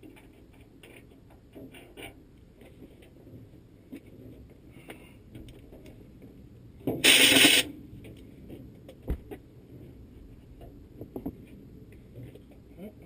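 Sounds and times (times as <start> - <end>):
shop tool hissing burst: 7.0 - 7.7.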